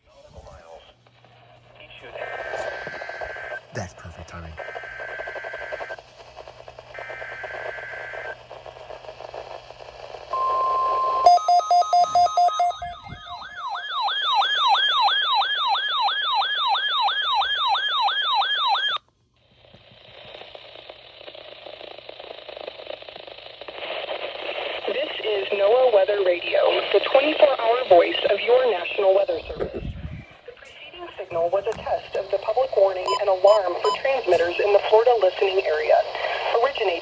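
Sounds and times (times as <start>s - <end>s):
radio hiss: 0.0s - 10.4s, 19.7s - 37.0s
rapid beeps: 10.4s - 13.8s, 33.0s - 34.6s
steady alarm tone: 10.4s - 19.0s
whooping siren tone: 12.6s - 18.9s.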